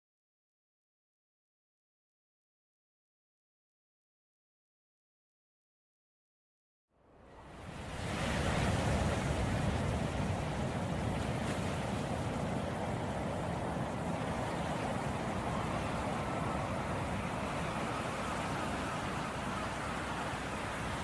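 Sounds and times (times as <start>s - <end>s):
ocean waves on shore: 7.0s - 21.0s.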